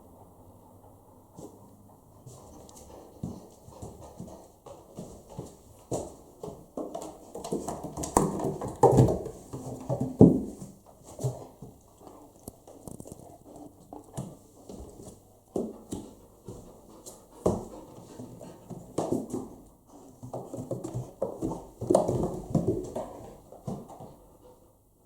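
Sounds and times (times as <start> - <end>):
dog paws knocking on hard floor: 2.2 - 24.2.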